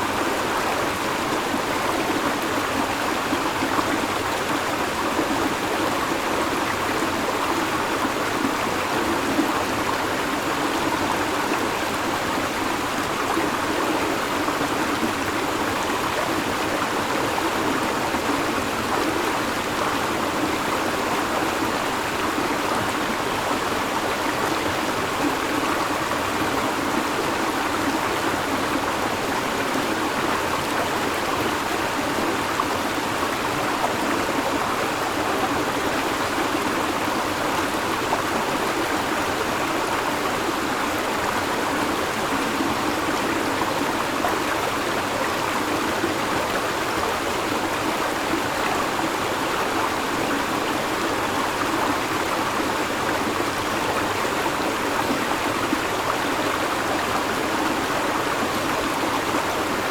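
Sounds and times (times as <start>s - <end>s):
river water babbling: 0.0s - 59.9s.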